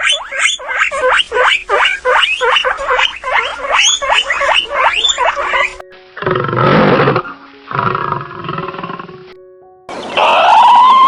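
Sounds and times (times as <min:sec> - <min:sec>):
small animal squealing: 0:00.0 - 0:05.8.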